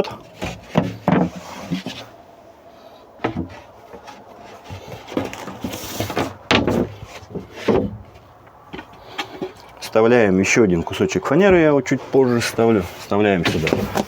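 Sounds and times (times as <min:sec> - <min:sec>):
wood scraping and rubbing: 0:00.0 - 0:14.0
wooden knocks and thumps: 0:00.1 - 0:02.1, 0:03.2 - 0:09.8, 0:10.9 - 0:11.8, 0:13.3 - 0:14.0.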